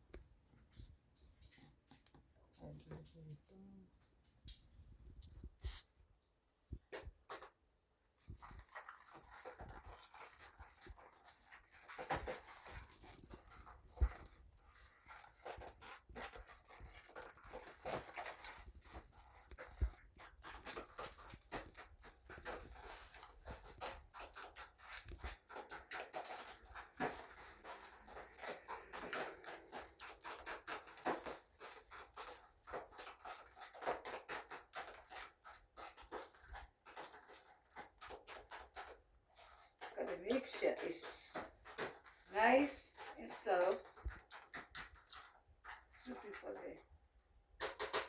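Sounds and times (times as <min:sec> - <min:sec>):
utensil scraping a bowl: 0:08.2 - 0:46.9.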